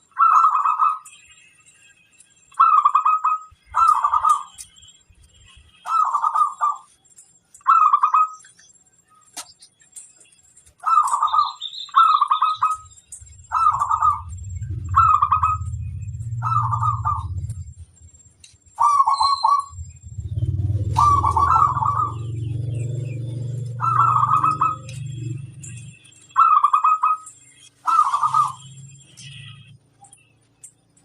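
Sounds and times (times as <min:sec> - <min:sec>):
faint high chirps and ticks: 0:00.2 - 0:31.0
dove cooing: 0:02.6 - 0:04.6, 0:05.8 - 0:06.9, 0:10.8 - 0:17.7, 0:18.8 - 0:25.4, 0:26.4 - 0:28.7
low rumble: 0:13.2 - 0:18.4, 0:19.6 - 0:26.0.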